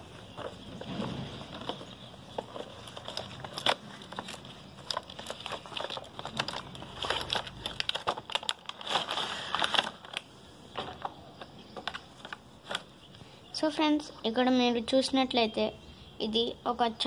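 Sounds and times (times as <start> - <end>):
handling clicks and knocks: 0.0 - 8.8
packaging crinkling and rustling: 0.0 - 13.2.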